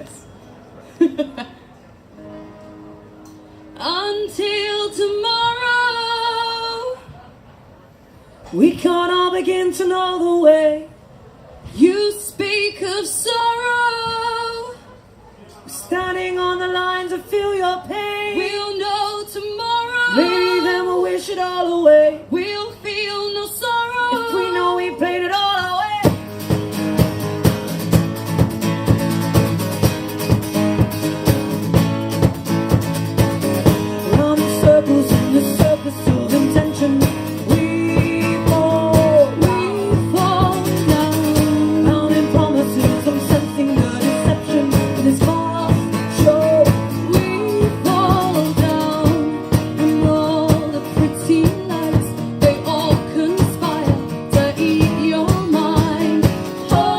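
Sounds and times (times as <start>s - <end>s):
person singing: 18.1s - 23.4s, 24.0s - 26.0s, 34.0s - 56.9s
strummed guitars with beat: 26.0s - 56.9s.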